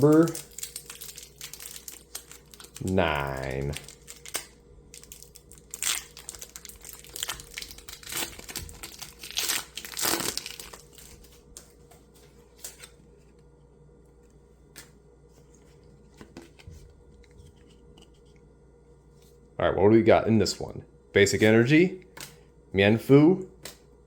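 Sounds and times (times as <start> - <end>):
foil pack crinkling and tearing: 0.0 - 11.6.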